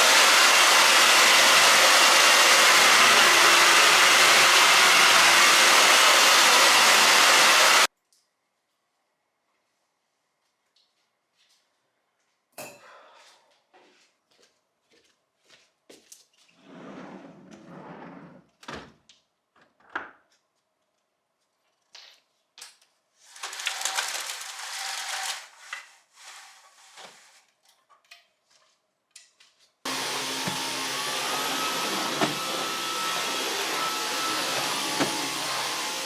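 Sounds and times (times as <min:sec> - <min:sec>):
vacuum cleaner running: 0:00.0 - 0:07.9, 0:29.9 - 0:36.0.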